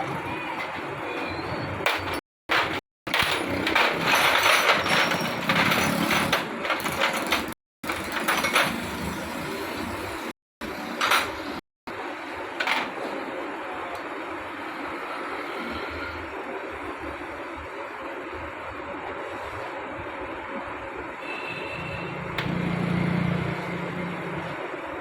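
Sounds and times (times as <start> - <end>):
metal engine parts clinking: 1.9 - 8.8.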